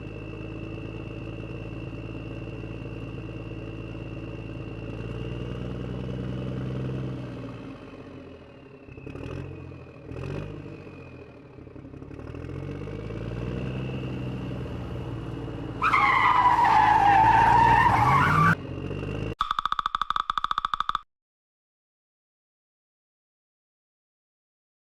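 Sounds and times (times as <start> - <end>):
tyre squeal: 15.8 - 18.6
rapid beeping: 19.4 - 21.0.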